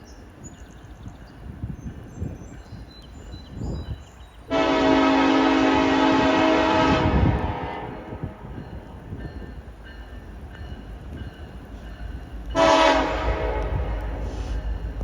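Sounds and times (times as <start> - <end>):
approaching train rumble: 0.0 - 15.0
locomotive air horn blast: 4.5 - 8.5, 12.5 - 14.8.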